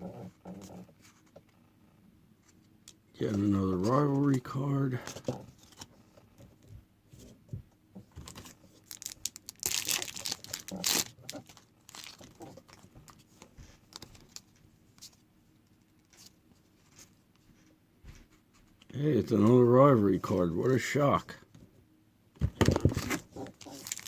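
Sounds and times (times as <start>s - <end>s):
wrapper crinkling: 8.2s - 14.5s, 23.0s - 24.0s
wrapper tearing open: 8.3s - 12.8s, 23.0s - 24.0s.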